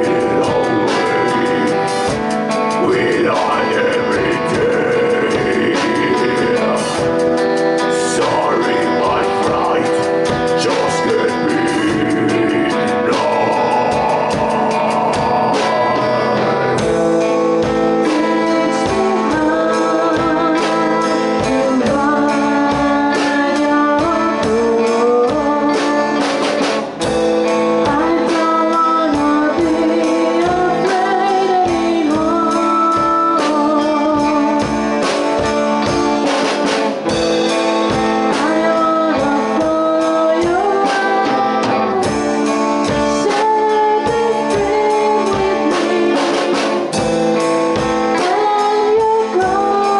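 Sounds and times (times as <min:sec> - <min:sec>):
steady beat: 0:00.0 - 0:17.3
guitar: 0:00.0 - 0:49.9.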